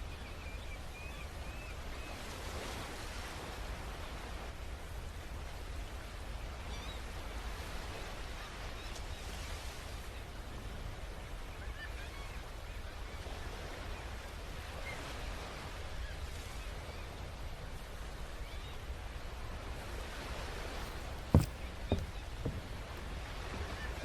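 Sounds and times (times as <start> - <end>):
soft knocks: 20.8 - 23.4.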